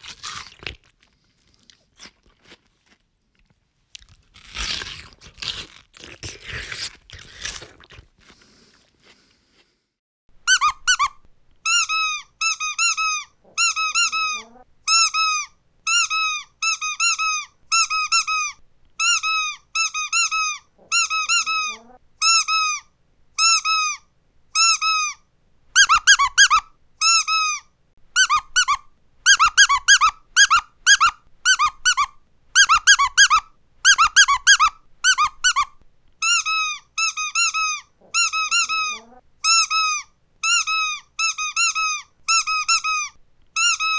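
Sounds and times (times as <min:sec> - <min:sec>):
squeaky dog toy squeaking: 0:10.4 - 0:25.2, 0:25.8 - 0:43.9.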